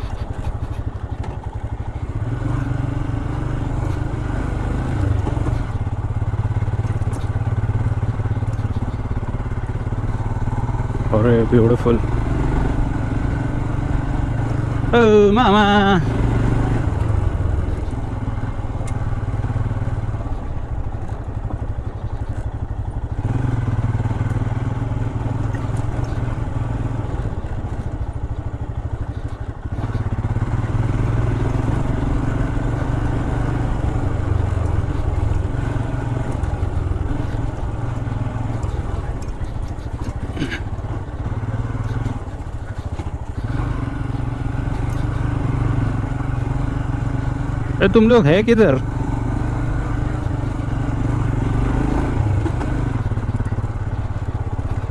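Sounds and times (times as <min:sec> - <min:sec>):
motorcycle engine running: 0:00.0 - 0:54.9.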